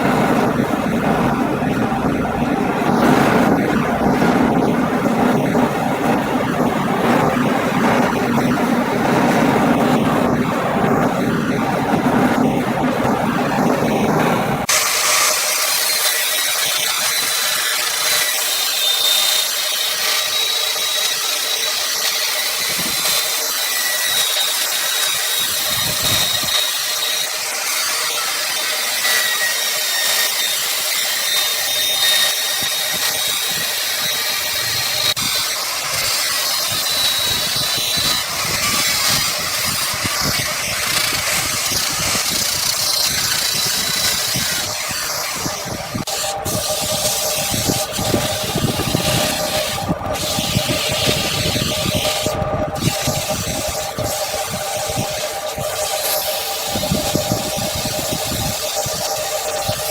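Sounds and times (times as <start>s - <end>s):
wood lathe cutting hiss: 14.6s - 59.9s.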